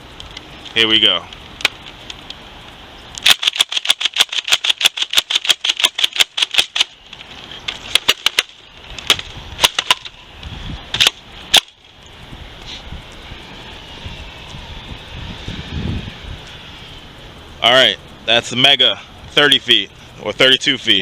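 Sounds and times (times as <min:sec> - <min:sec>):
toy blaster snapping shots: 0:03.2 - 0:07.0, 0:07.9 - 0:10.1, 0:11.0 - 0:11.8.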